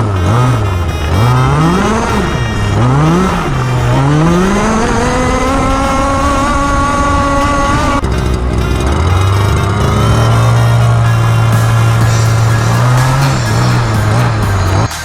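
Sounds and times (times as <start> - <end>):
petrol engine revving: 0.0 - 15.0.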